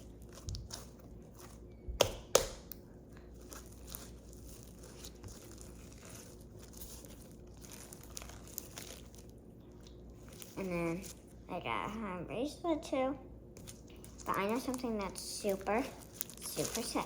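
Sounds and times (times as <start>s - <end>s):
slime snapping: 2.0s - 2.8s
slime crackling and popping: 2.0s - 10.6s, 13.6s - 17.0s.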